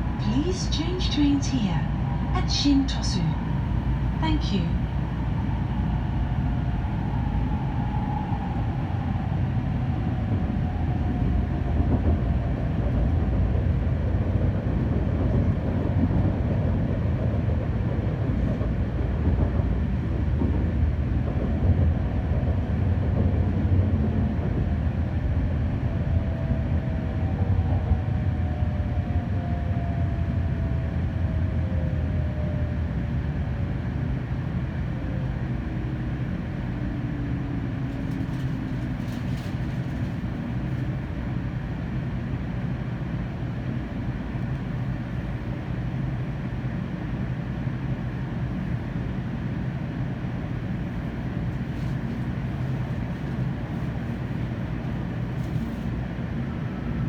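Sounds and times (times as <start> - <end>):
train wheels rumbling on track: 0.0 - 32.8, 33.8 - 57.0.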